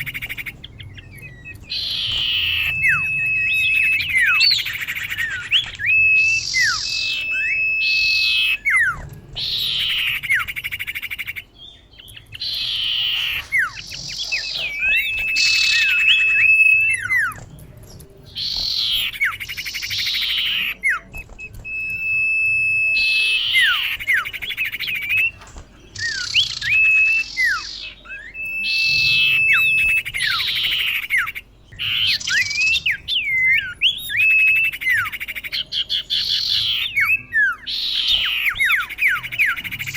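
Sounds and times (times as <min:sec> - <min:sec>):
bird whistling and rasping calls: 0:00.0 - 0:39.9.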